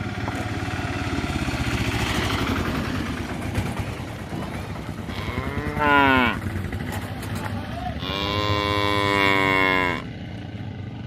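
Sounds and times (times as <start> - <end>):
engine running: 0.0 - 11.0
buffalo mooing: 5.1 - 6.5, 8.0 - 10.1.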